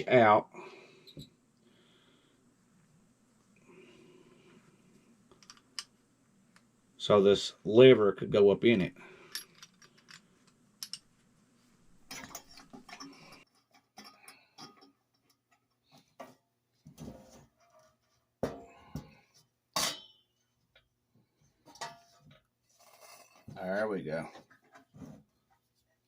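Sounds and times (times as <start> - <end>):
small metal parts clicking: 5.3 - 5.9, 9.3 - 11.1.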